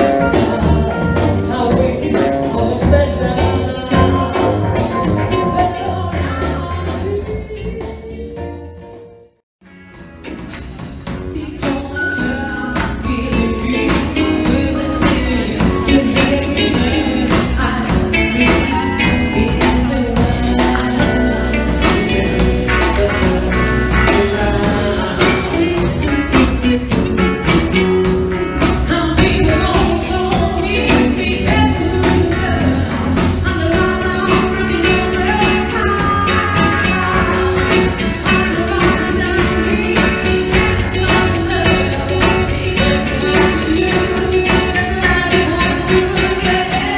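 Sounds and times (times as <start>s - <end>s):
steady drum beat: 0.0s - 8.6s, 9.7s - 46.9s
person singing: 0.0s - 9.2s, 10.7s - 46.9s
guitar: 0.0s - 46.9s.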